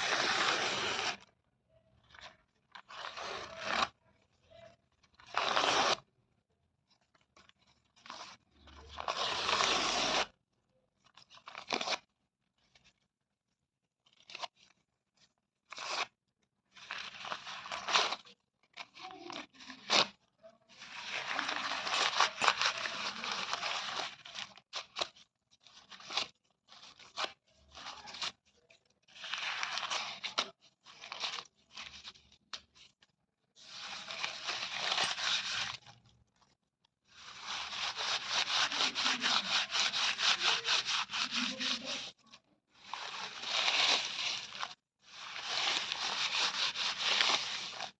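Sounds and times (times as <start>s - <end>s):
material tearing: 0.0s - 1.3s, 2.1s - 4.0s, 5.2s - 6.0s, 8.0s - 10.3s, 20.8s - 25.2s, 33.7s - 36.0s, 37.2s - 42.2s.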